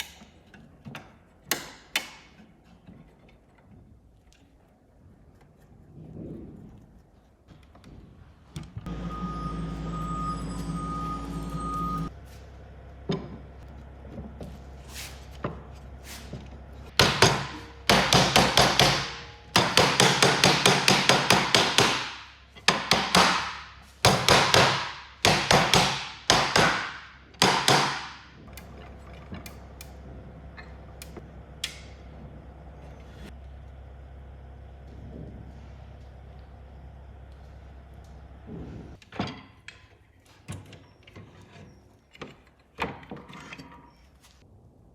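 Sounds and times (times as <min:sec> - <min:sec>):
electric machine hum: 0:08.9 - 0:19.8, 0:28.4 - 0:39.0
hammering on wood: 0:16.9 - 0:28.4.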